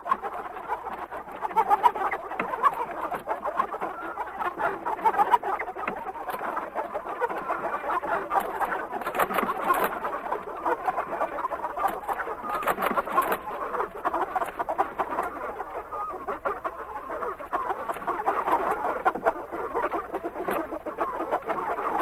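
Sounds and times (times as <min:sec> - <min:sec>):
chickens clucking: 0:00.0 - 0:22.0.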